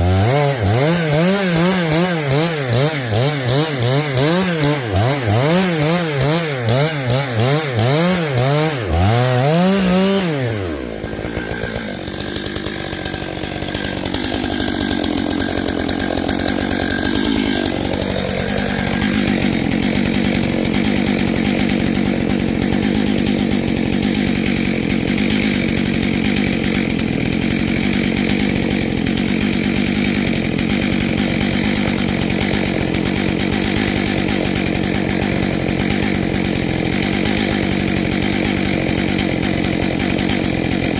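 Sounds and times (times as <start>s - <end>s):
chainsaw cutting log: 0.0s - 40.9s.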